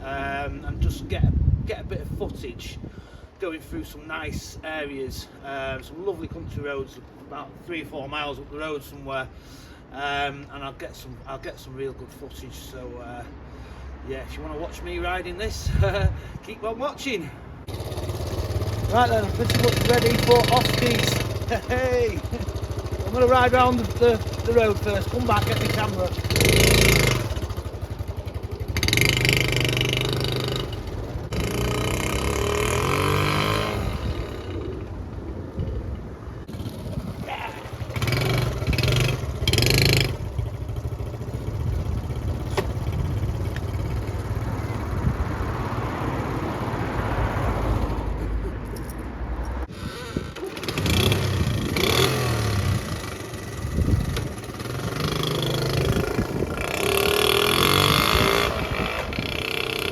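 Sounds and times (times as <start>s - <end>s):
small motorcycle engine revving: 17.7s - 34.9s, 36.4s - 48.2s, 49.6s - 59.9s.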